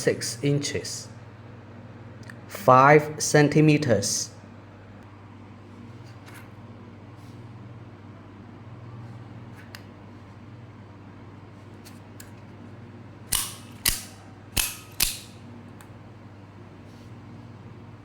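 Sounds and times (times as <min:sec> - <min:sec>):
knife blade snapping out clicks: 0:13.3 - 0:15.3.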